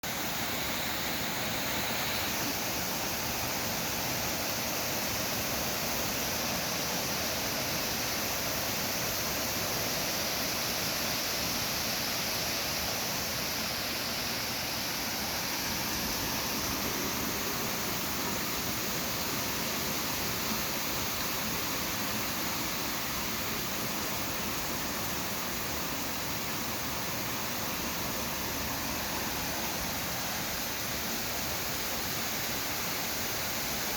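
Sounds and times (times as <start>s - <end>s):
heavy rain pouring: 14.2s - 32.8s.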